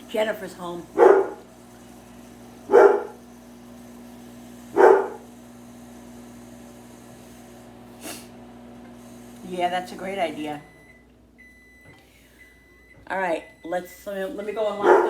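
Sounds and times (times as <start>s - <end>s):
microwave oven humming: 0.0s - 15.0s
dog barking: 1.0s - 1.4s, 2.6s - 3.2s, 4.7s - 5.2s, 14.8s - 15.0s.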